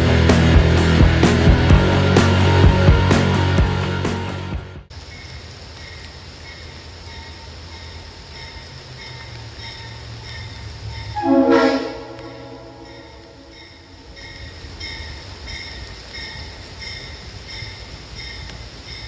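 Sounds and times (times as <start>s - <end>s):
air horn blast: 11.2s - 13.9s.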